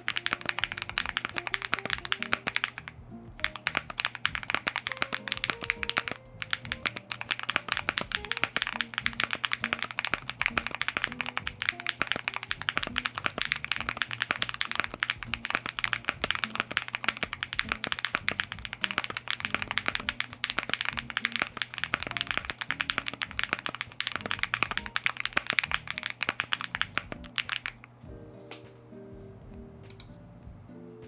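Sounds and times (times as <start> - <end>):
fast keyboard typing: 0.0 - 28.2.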